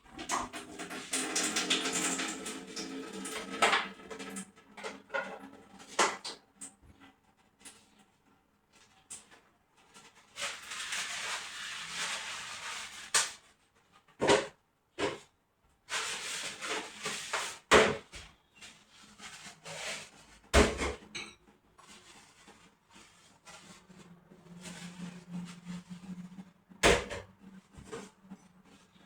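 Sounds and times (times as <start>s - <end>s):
rustling scrubbing: 9.8s - 13.5s, 15.9s - 17.7s, 18.6s - 20.5s, 21.8s - 26.1s.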